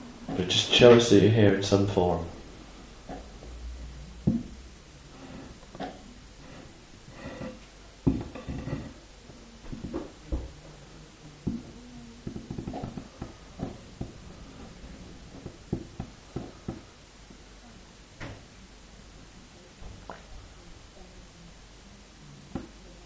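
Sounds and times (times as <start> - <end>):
table creaking and scraping: 4.3 - 9.1, 11.4 - 16.9.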